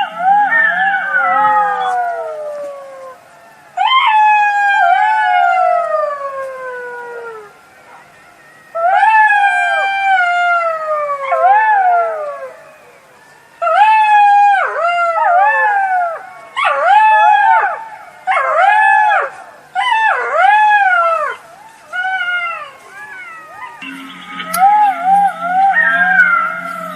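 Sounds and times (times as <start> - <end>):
jackal howling: 0.0 - 3.2, 8.8 - 12.5.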